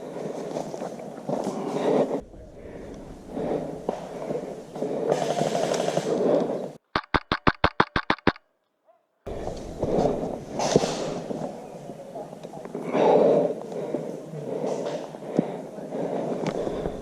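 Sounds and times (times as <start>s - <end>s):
airsoft rifle rapid shots: 5.1s - 6.1s, 6.9s - 8.4s.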